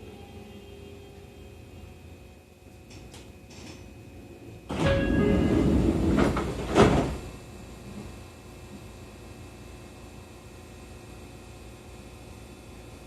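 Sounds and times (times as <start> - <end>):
train doors sliding: 4.7 - 7.4.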